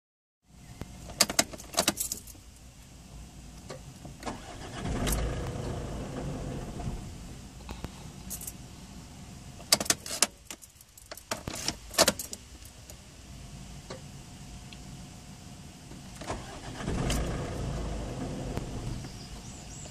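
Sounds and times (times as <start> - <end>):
keys rattling: 1.6 - 2.4, 8.3 - 8.6
ignition clicks: 3.5 - 7.0, 9.6 - 13.0, 15.9 - 19.9
diesel engine turning over: 4.2 - 7.3, 16.1 - 19.8.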